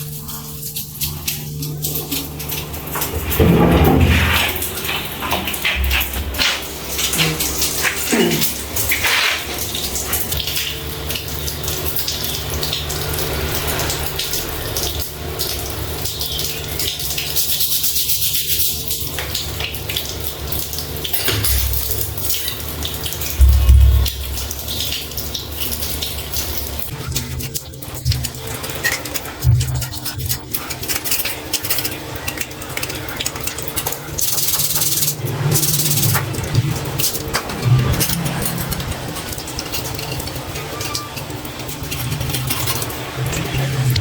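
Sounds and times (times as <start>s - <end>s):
water running from a tap: 0.0s - 44.0s
heavy low thumps: 23.4s - 24.8s.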